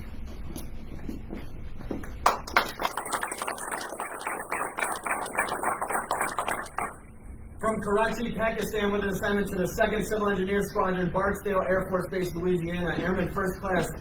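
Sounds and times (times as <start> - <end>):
soft taps and shuffles: 0.0 - 2.2
audience clapping: 2.0 - 7.0.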